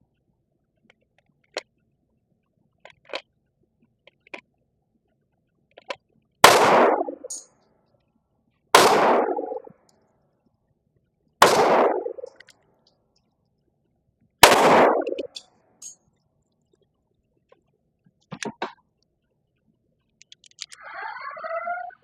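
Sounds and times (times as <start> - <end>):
pistol shots echoing: 6.4 - 7.4, 8.8 - 9.7, 11.4 - 12.3, 14.4 - 15.3
faint clicks: 15.2 - 20.9.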